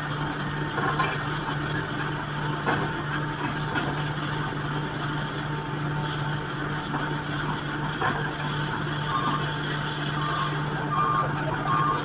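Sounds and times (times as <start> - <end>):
excavator engine running: 0.0 - 12.0
high metallic squeaks: 8.2 - 12.0.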